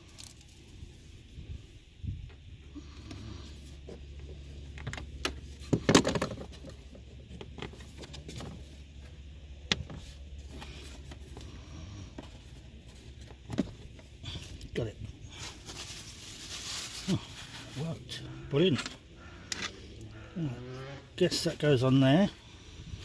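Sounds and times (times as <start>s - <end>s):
steady low hum: 0.0s - 23.0s
tubing clicks and knocks: 4.8s - 8.6s.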